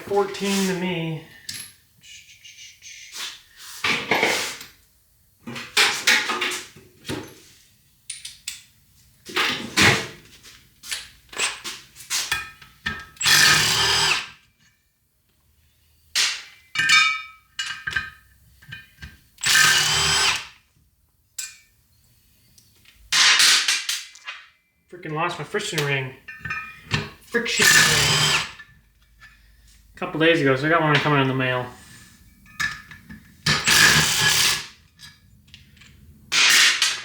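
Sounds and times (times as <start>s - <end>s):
power tool running in bursts: 13.2s - 14.3s, 19.4s - 20.5s, 27.6s - 28.6s, 33.6s - 34.7s.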